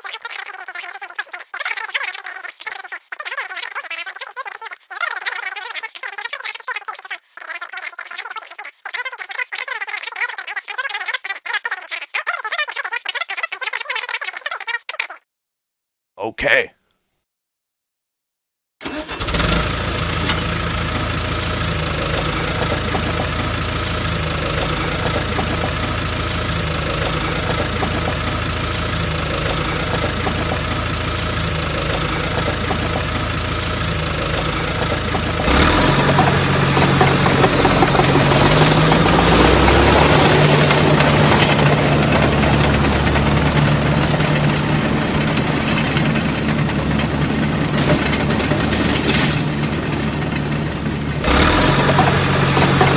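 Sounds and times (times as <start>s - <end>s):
small engine running: 18.8s - 52.9s.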